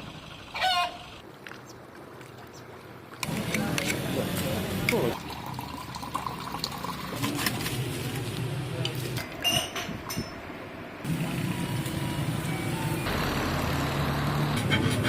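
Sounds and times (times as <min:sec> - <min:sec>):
engine humming: 0:10.9 - 0:15.0.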